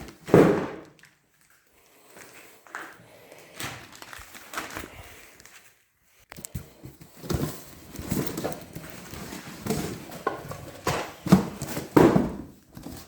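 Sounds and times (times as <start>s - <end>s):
knocks and thuds of parts: 0.0s - 1.0s, 9.5s - 13.0s
cardboard packing rustling: 3.3s - 5.8s, 6.5s - 13.0s.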